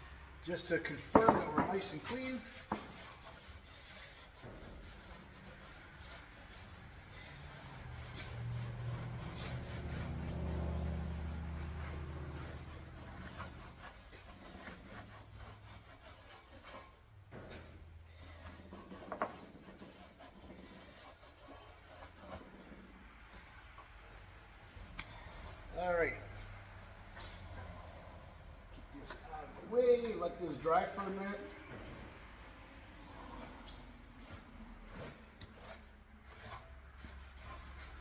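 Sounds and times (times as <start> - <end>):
rag wiping metal panel: 0.6 - 25.9, 33.0 - 38.0.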